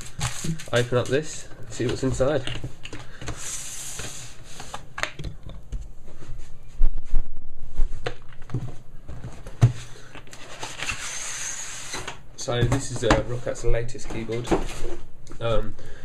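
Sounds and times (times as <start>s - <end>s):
cardboard and packaging rustling: 0.0s - 5.1s, 7.7s - 11.2s.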